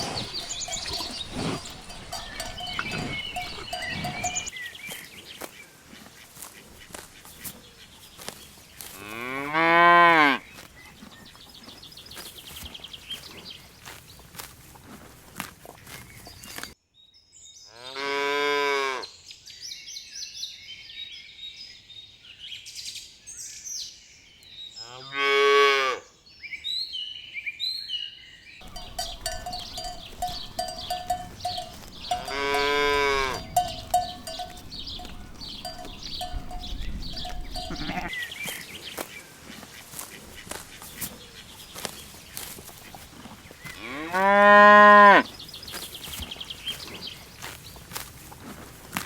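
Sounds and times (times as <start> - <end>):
cows mooing: 0.0 - 4.5, 28.6 - 38.1, 43.8 - 45.2
birds chirping: 0.0 - 5.3, 28.6 - 39.3.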